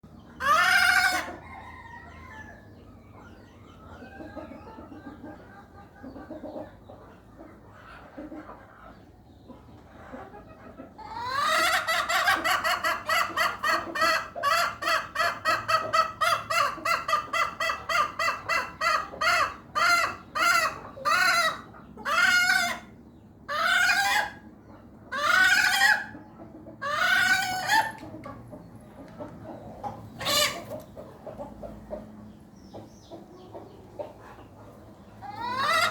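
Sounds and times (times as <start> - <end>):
hen calling: 29.7 - 30.8, 35.2 - 35.9.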